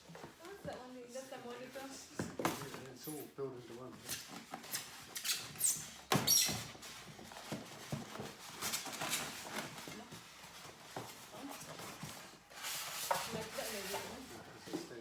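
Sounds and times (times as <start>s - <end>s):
packaging rustling and knocking: 5.9s - 15.0s.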